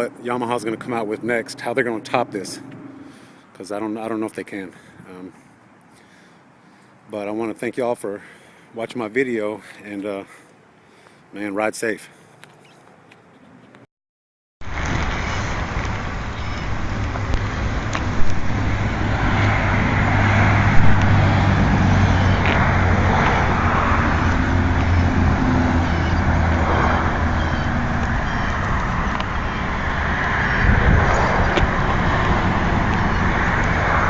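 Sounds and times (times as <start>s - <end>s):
road noise: 0.0s - 13.9s, 14.6s - 34.0s
vehicle engine running: 14.7s - 34.0s.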